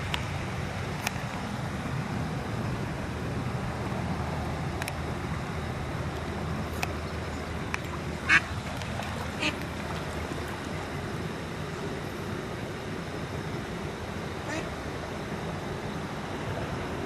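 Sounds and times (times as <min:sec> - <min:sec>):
steady low rumble: 0:00.0 - 0:17.0
duck quacking: 0:08.2 - 0:08.5, 0:09.4 - 0:09.6, 0:14.4 - 0:14.7.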